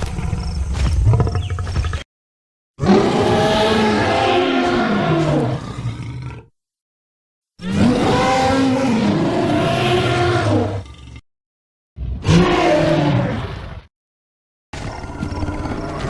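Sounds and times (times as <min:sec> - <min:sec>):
dinosaur roar: 0:02.8 - 0:06.5, 0:07.6 - 0:11.2, 0:12.0 - 0:13.9, 0:14.8 - 0:16.0.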